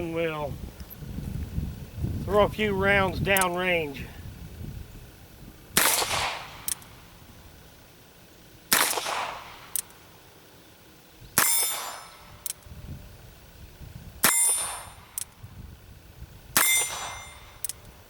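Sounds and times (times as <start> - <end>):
revolver shots: 5.8 - 7.0, 8.7 - 10.0, 16.6 - 17.7
metallic ring: 11.4 - 12.5, 14.2 - 15.1, 16.6 - 17.8.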